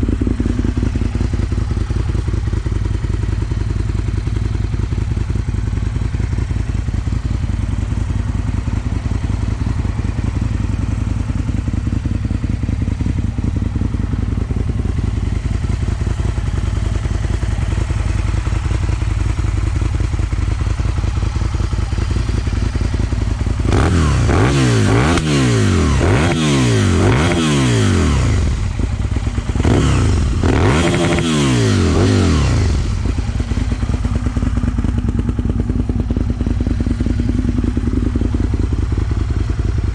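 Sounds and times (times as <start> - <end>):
motorcycle engine idling: 0.0 - 39.9
motorcycle throttle revs: 14.3 - 39.9.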